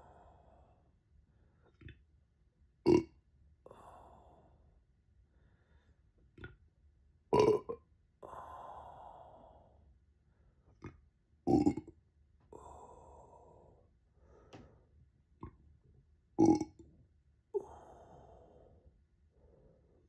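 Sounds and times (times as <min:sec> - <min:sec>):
faint small gulps: 0:01.6 - 0:02.1, 0:10.7 - 0:12.0
person burping: 0:02.9 - 0:03.2, 0:07.4 - 0:07.8, 0:11.5 - 0:11.9, 0:16.4 - 0:16.8
breathy exhale: 0:03.7 - 0:04.6, 0:08.2 - 0:09.8, 0:12.5 - 0:14.9, 0:17.6 - 0:20.0.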